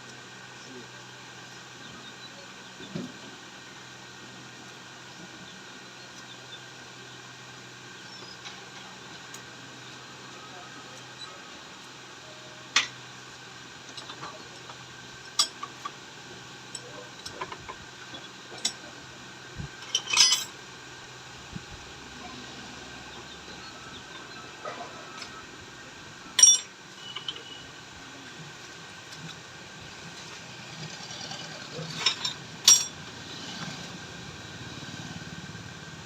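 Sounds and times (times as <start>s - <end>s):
faint steady hum: 0.0s - 31.0s
metal parts clinking: 19.8s - 20.5s, 26.4s - 27.4s, 32.0s - 32.9s.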